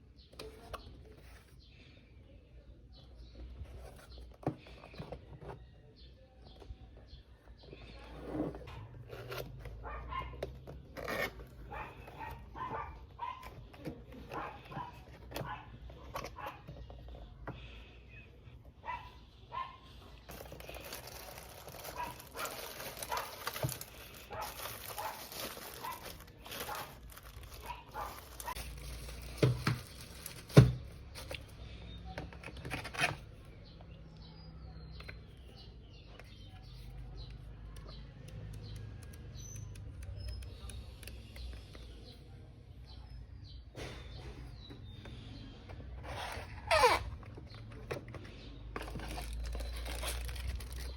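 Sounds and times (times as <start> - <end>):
plastic wrap crinkling: 20.3 - 31.5, 48.8 - 50.9.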